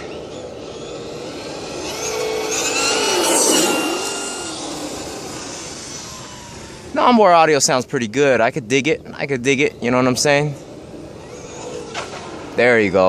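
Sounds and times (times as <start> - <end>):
toy truck drivetrain whining: 0.0 - 7.4, 10.6 - 12.6.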